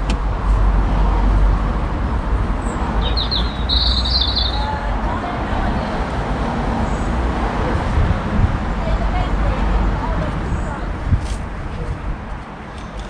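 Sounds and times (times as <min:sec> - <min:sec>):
steady low rumble: 0:00.0 - 0:12.6
bird chirping: 0:03.0 - 0:04.7.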